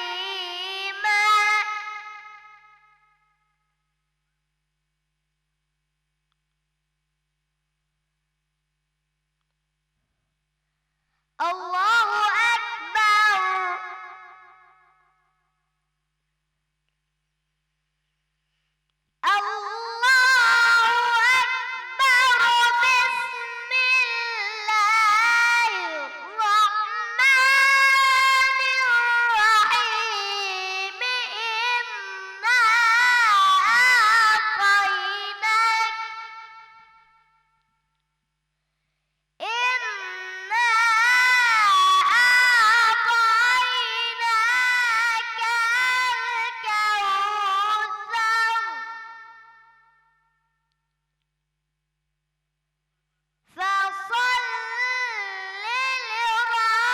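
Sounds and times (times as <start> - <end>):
boy chanting melodically: 0.0 - 2.9, 11.4 - 14.8, 19.2 - 37.1, 39.4 - 49.8, 53.6 - 56.9.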